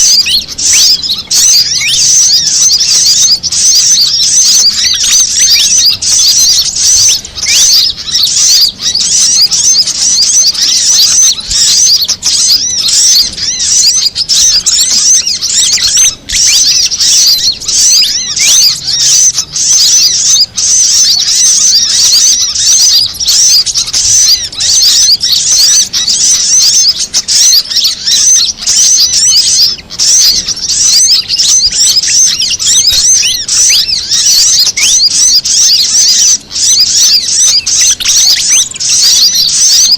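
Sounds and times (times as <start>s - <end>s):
small birds chirping and twittering: 0.0s - 39.9s.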